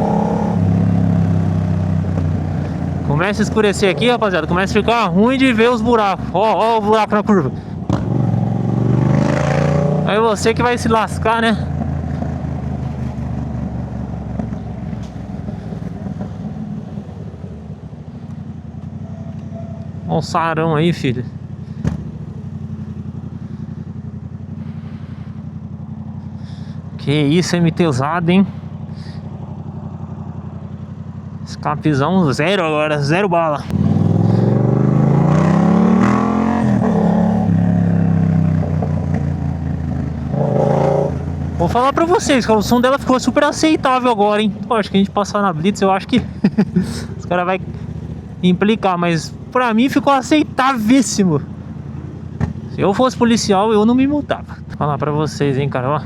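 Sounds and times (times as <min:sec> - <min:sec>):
motorcycle engine revving: 0:00.0 - 0:56.0
motorcycle engine exhaust note: 0:11.6 - 0:20.2, 0:21.3 - 0:27.0, 0:33.7 - 0:41.7.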